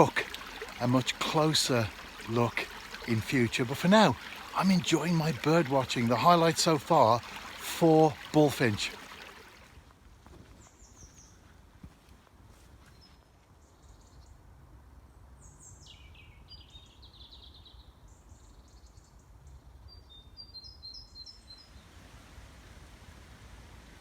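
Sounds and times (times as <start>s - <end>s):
songbirds singing: 0.0s - 9.5s, 15.4s - 21.8s.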